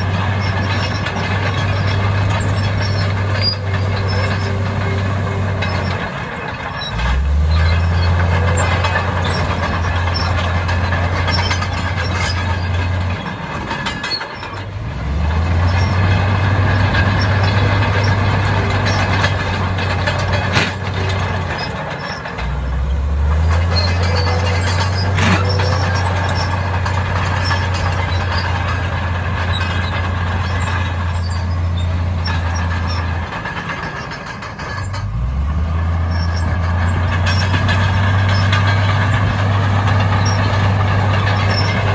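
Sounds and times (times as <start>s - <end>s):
diesel machine engine: 0.0s - 41.9s
grinding clattering noise: 0.0s - 41.9s
scattered knocks: 15.6s - 22.7s, 36.2s - 41.9s.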